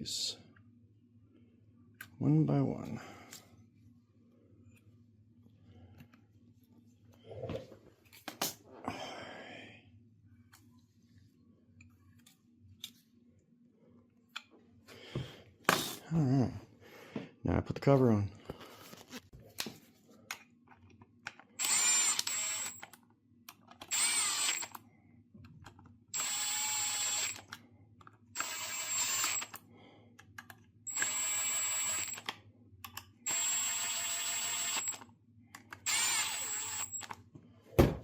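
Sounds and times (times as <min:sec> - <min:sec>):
power drill whining: 0:21.6 - 0:22.8, 0:23.9 - 0:24.7, 0:26.2 - 0:27.5, 0:28.4 - 0:29.6, 0:30.9 - 0:32.2, 0:33.3 - 0:35.0, 0:35.8 - 0:37.2.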